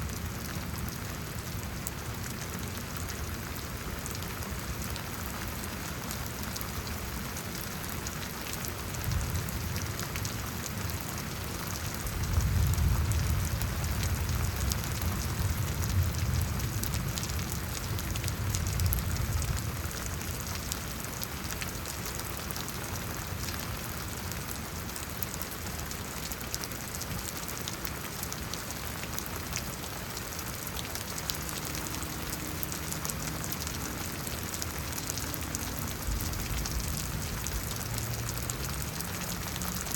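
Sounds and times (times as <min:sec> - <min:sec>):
rain pattering: 0:00.0 - 0:39.9
low thunder rumble: 0:12.1 - 0:19.8.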